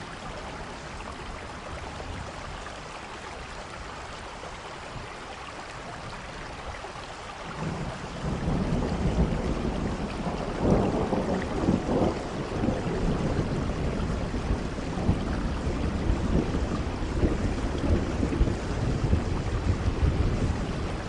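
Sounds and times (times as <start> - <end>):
rain falling: 0.0 - 21.0
rolling thunder rumble: 7.6 - 21.0.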